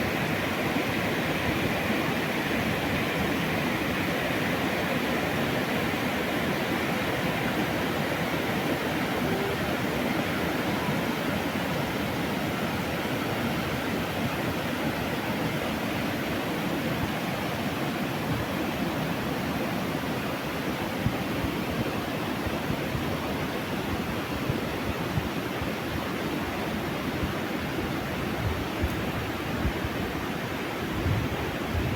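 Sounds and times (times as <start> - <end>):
floodwater rushing: 0.0 - 20.6.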